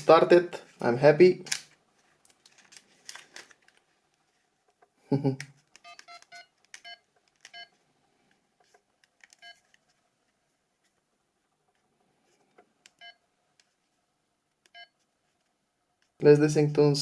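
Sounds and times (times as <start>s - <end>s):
phone keypad beeps: 5.8s - 7.7s, 13.0s - 13.2s, 14.7s - 14.9s.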